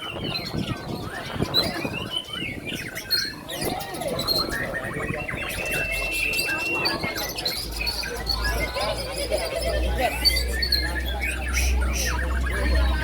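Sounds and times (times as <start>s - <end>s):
bird singing whistles and chirps: 0.0s - 8.8s.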